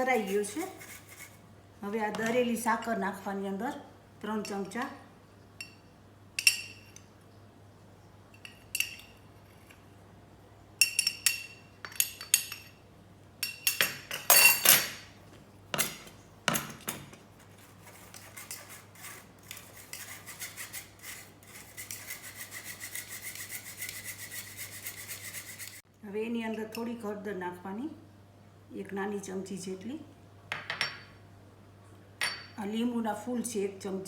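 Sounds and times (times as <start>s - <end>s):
spoon scraping round a bowl: 0.0s - 1.4s, 17.4s - 25.8s
metal spoon clinking on containers: 13.4s - 15.0s.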